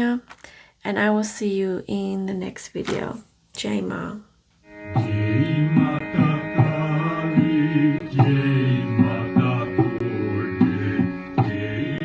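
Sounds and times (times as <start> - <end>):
plucked strings over drone: 4.7 - 12.0.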